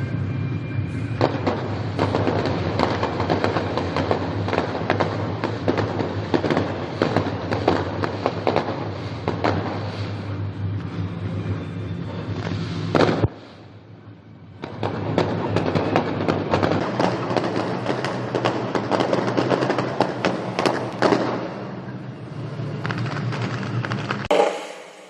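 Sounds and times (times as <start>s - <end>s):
fireworks loud bangs: 1.0s - 13.6s, 14.6s - 21.8s
fireworks crackling bursts: 1.0s - 13.8s, 14.6s - 21.8s, 22.5s - 25.0s.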